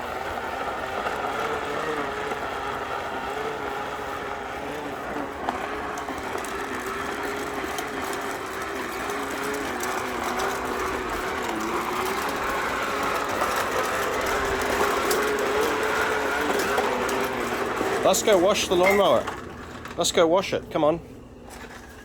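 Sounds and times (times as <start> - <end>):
toy motor whirring: 0.6 - 20.0.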